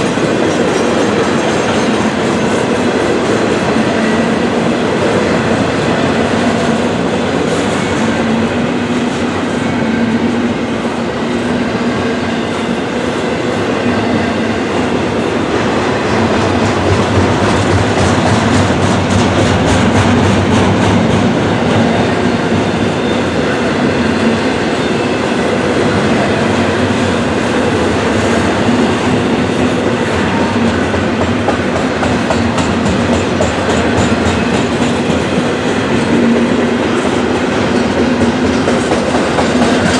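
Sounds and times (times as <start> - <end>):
train wheels rumbling on rail: 0.0 - 39.9
wheels clacking over rail joints: 16.1 - 22.1, 29.6 - 39.9.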